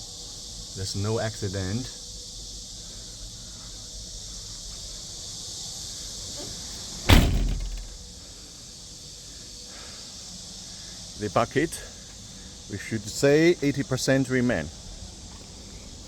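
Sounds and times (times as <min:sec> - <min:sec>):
crickets chirring: 0:00.0 - 0:16.0
cab door slamming: 0:06.3 - 0:08.1.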